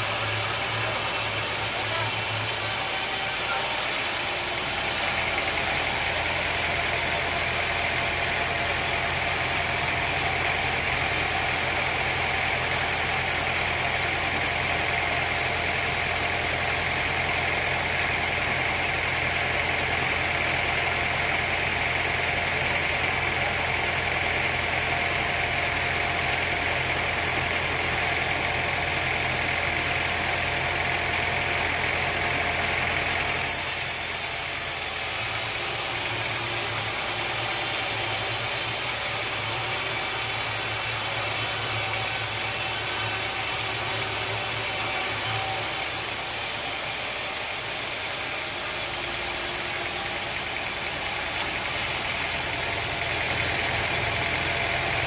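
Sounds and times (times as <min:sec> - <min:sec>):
machinery motor hum: 0:00.0 - 0:55.0.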